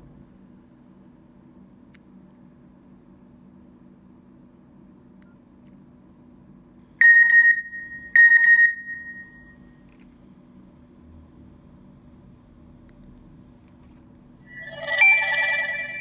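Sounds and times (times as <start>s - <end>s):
faint steady hum: 0.0s - 16.0s
phone ring tone chimes: 7.0s - 9.5s, 14.5s - 16.0s.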